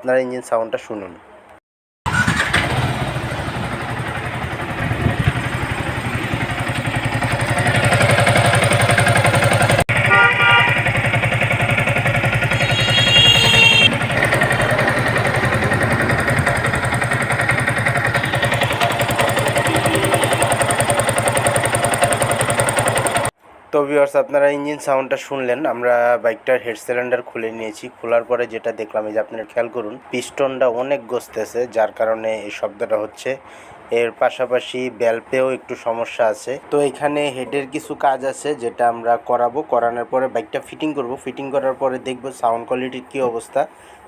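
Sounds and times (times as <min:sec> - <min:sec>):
motorcycle engine running roughly: 0:02.1 - 0:23.3
short high-pitched tones: 0:12.4 - 0:16.3, 0:19.5 - 0:20.7.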